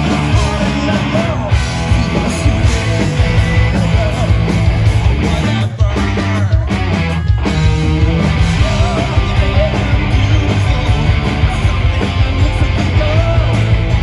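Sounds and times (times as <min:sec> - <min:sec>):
loud rock music: 0:00.0 - 0:14.0.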